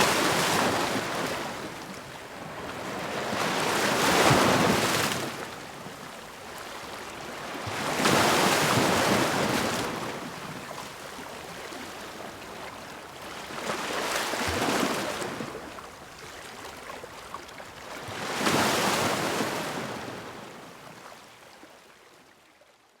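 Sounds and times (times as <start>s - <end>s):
ocean waves breaking: 0.0s - 1.9s.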